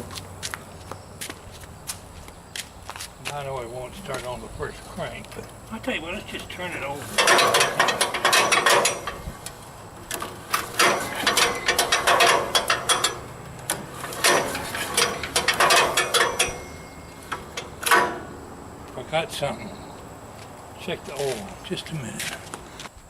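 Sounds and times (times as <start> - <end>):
engine turning over with ratchet: 5.8 - 18.4.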